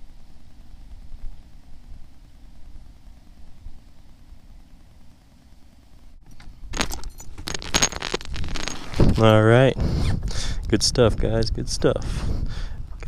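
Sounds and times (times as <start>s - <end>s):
low steady rumble: 0.0s - 13.0s
handling clicks and rattles: 6.3s - 9.4s.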